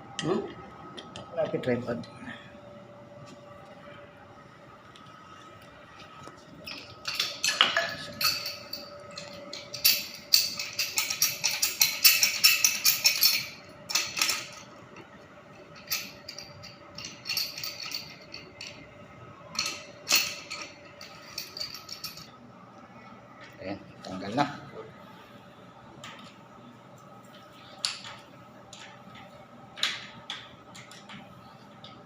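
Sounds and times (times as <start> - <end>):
faint steady hum: 0.0 - 32.0
metal tools clinking on pipes: 6.6 - 14.7, 15.8 - 18.8, 19.5 - 22.3.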